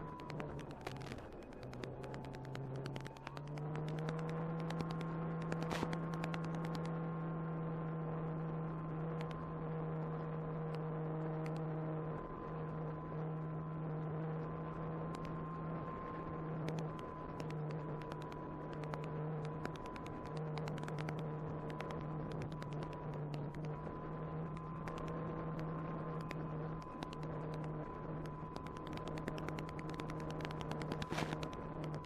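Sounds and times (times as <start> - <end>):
sharp clicks: 0.0 - 6.9, 16.7 - 23.8, 24.5 - 32.0
electric motor and propeller humming: 0.0 - 32.0.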